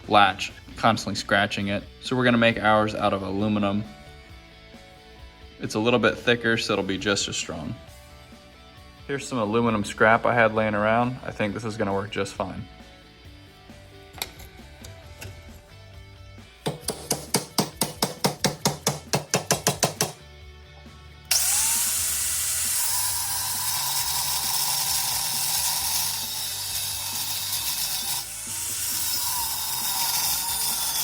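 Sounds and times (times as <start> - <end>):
hand tool strokes on aluminum: 21.3 - 31.0
power tool cutting aluminum: 21.3 - 31.0.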